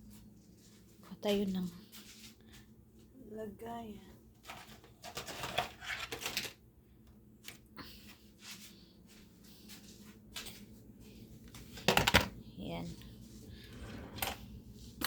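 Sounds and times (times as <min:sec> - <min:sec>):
rustling of things handled: 0:00.0 - 0:03.1, 0:04.3 - 0:06.6, 0:07.4 - 0:15.0.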